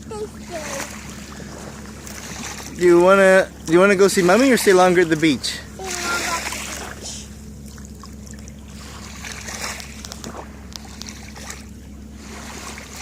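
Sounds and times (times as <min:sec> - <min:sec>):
steady low rumble: 0:00.0 - 0:13.0
water trickling and splashing: 0:00.0 - 0:13.0.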